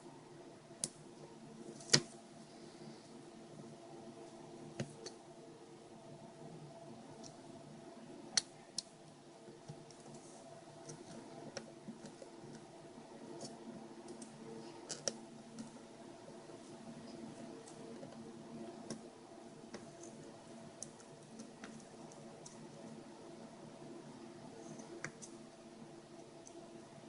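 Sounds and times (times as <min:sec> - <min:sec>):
faint steady hum: 0:00.0 - 0:27.0.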